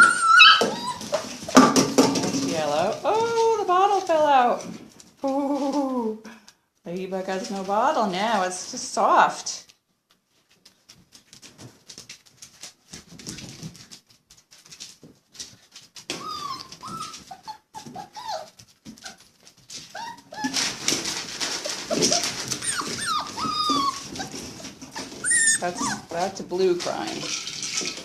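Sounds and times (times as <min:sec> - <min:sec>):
puppies whimpering: 0:00.0 - 0:01.6, 0:16.1 - 0:19.2, 0:19.9 - 0:20.8, 0:21.5 - 0:26.3
small clicks and scuffles: 0:09.6 - 0:17.4.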